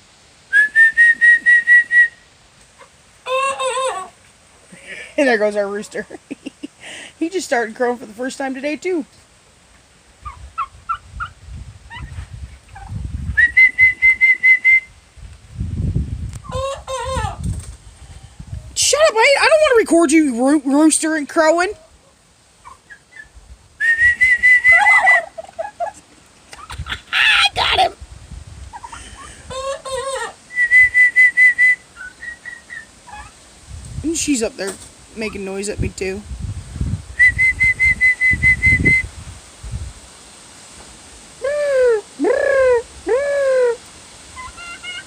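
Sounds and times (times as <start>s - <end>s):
turkeys calling: 2.6s - 5.1s, 10.2s - 13.0s, 16.4s - 17.4s, 21.8s - 23.4s, 24.3s - 27.9s, 28.7s - 30.4s, 31.9s - 33.4s, 41.4s - 45.0s
young rooster crowing: 3.3s - 4.1s, 16.5s - 17.4s.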